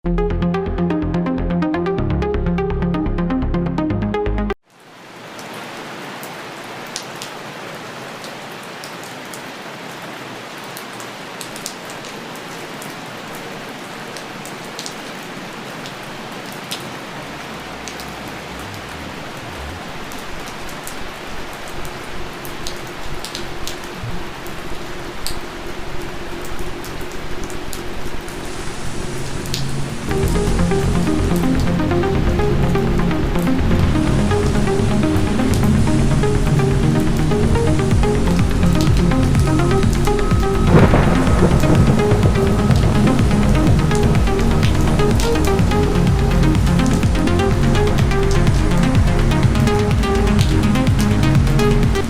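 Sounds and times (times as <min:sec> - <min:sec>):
steady rain falling: 0:04.6 - 0:52.0
low rumble: 0:28.7 - 0:52.0.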